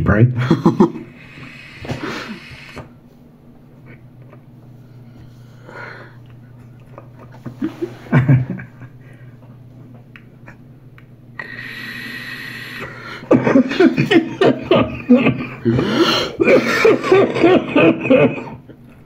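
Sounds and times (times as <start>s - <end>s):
man coughing: 13.0s - 18.6s.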